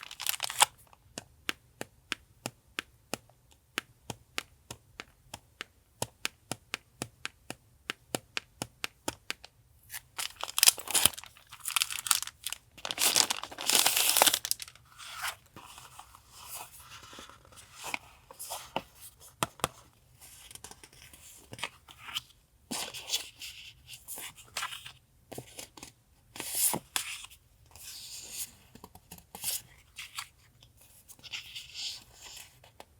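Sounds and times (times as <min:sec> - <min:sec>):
packaging rustling and crinkling: 0:00.0 - 0:00.8, 0:09.9 - 0:16.0
packaging torn open: 0:00.0 - 0:00.8, 0:09.9 - 0:14.8.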